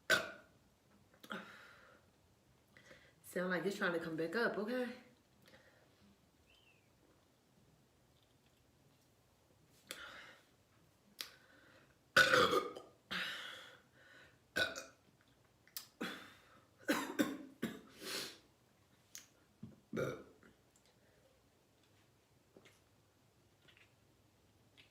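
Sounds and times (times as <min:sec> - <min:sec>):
woman burping: 0:00.1 - 0:00.5, 0:12.2 - 0:13.5, 0:14.6 - 0:15.0, 0:16.0 - 0:17.9, 0:19.9 - 0:20.5.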